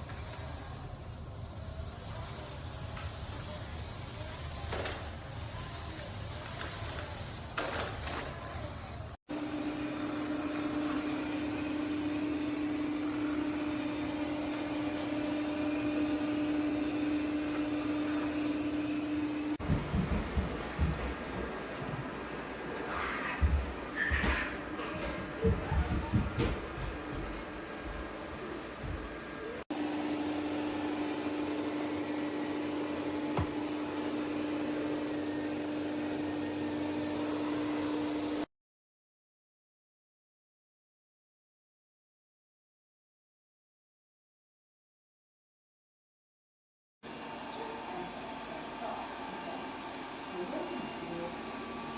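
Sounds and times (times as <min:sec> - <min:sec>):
robot vacuum motor humming: 0:09.3 - 0:19.6, 0:29.7 - 0:38.5, 0:47.1 - 0:51.9.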